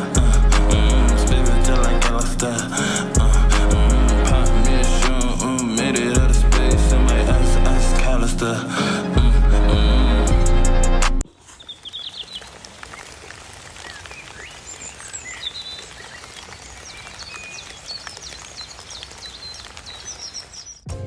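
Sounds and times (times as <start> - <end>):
birds chirping: 0.0 - 6.4, 11.2 - 20.9
steady outdoor hiss: 11.2 - 20.6.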